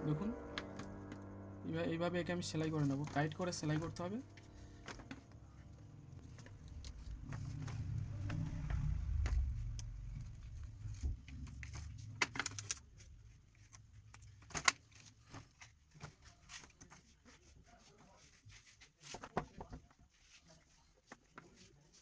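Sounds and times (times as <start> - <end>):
low rumble: 0.0 - 12.0
clicks and scrapes of wire: 6.2 - 17.4.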